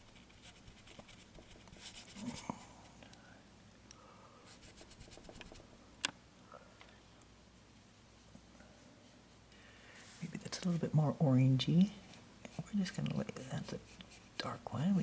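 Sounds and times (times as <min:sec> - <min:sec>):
paintbrush scrubbing board: 0:00.0 - 0:02.4.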